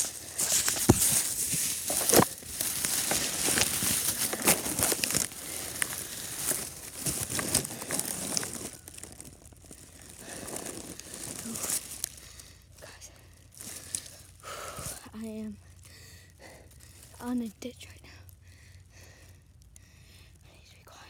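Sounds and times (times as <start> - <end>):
rustling through dry brush: 0.0 - 19.7.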